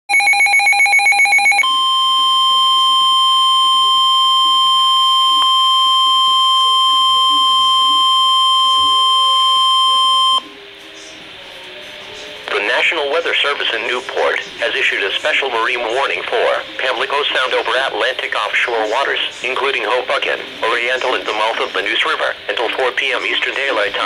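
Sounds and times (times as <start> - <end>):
steady alarm tone: 0.1 - 10.5.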